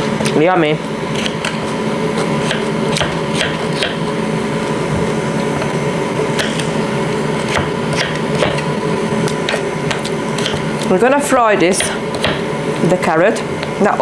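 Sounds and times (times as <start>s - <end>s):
kitchen appliance hum: 0.0s - 14.0s
knife chopping on wooden board: 1.1s - 4.0s, 6.4s - 6.8s, 7.4s - 12.5s.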